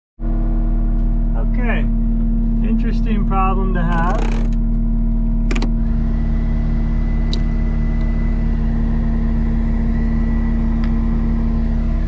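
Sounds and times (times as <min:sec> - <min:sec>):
diesel engine running: 0:00.2 - 0:12.0.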